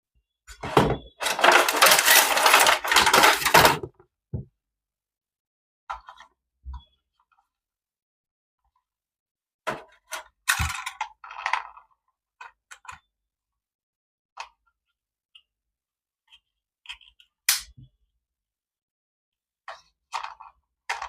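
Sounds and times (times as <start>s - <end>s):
clattering and scraping: 0.6s - 3.9s
small objects clicking and knocking: 1.2s - 3.9s.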